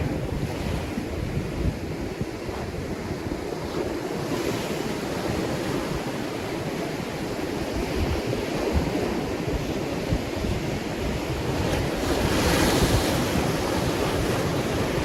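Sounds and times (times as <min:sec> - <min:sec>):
ocean surf washing onto shore: 0:00.0 - 0:15.0
wind buffeting microphone: 0:00.0 - 0:15.0.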